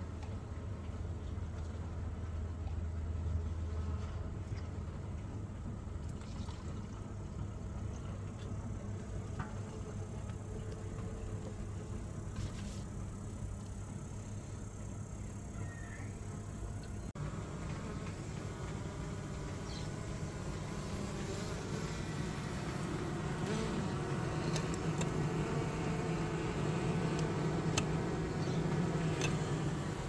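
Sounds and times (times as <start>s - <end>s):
honeybees buzzing: 16.1s - 30.0s.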